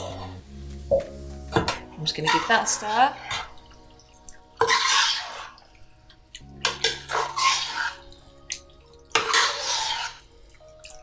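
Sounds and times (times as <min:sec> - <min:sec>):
spoon stirring wet food in pan: 0:01.1 - 0:11.0.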